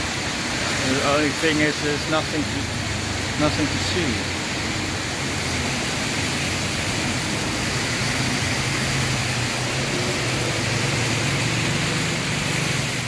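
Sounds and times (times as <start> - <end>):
wind and road noise: 0.0 - 13.0.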